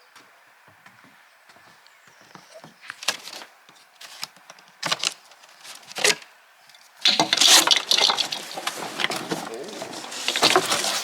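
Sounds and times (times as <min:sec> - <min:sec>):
cardboard box scraping and rustling: 0:04.9 - 0:06.2, 0:07.1 - 0:11.0.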